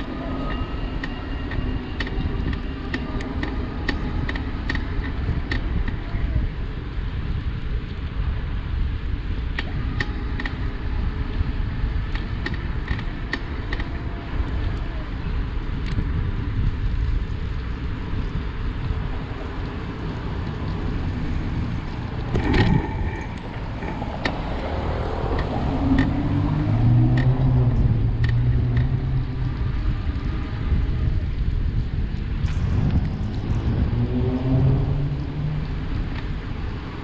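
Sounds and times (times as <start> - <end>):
steady low rumble: 0.0 - 37.0
bicycle crank creaking clicks: 12.0 - 14.9.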